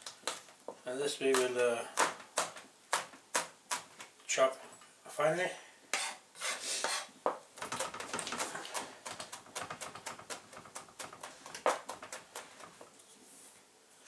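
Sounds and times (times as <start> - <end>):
knife chopping on board: 1.3 - 3.9.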